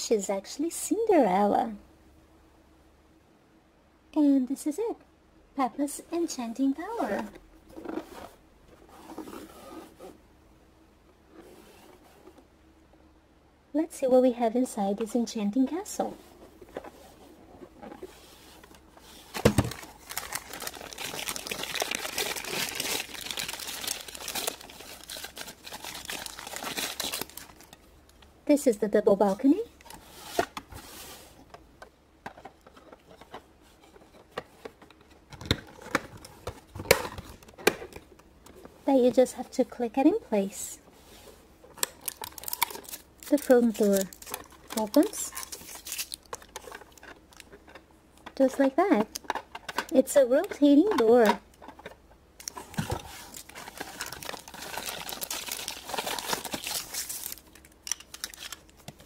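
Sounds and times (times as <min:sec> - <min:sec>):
plastic packaging crinkling: 0:19.2 - 0:27.9, 0:41.7 - 0:47.8, 0:50.8 - 0:59.0.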